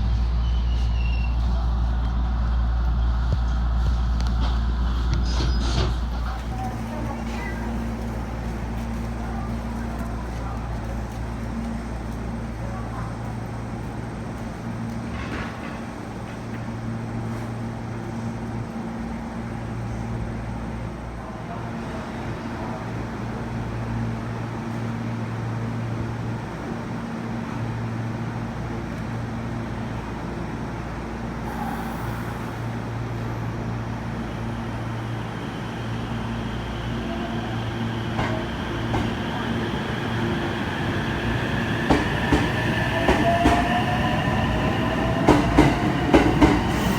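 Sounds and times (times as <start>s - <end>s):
low hum: 0.0s - 6.2s
train rumble: 0.0s - 46.9s.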